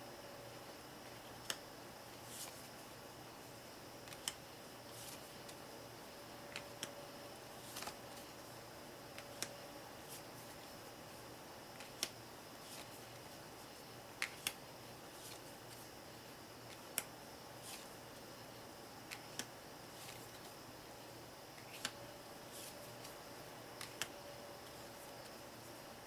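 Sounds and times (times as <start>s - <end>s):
faint room hum: 0.0s - 26.0s
playing card snaps: 21.6s - 22.0s.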